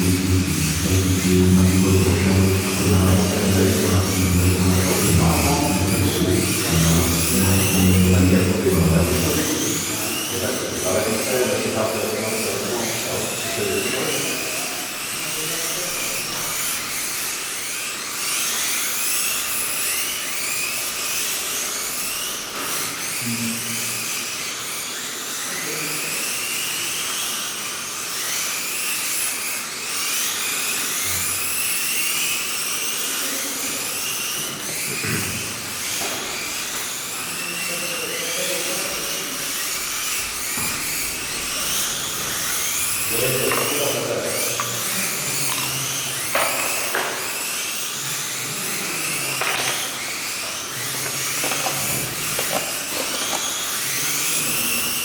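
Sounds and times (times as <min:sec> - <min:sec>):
faint voices: 0:00.0 - 0:17.0, 0:37.2 - 0:46.8
electric toy car motors whining: 0:00.0 - 0:55.0.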